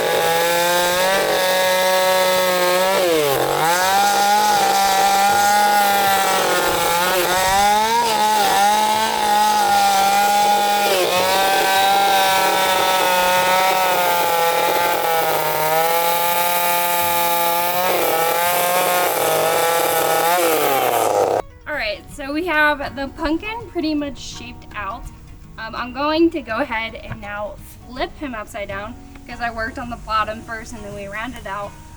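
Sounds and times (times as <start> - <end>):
chainsaw carving wood: 0.0 - 21.4.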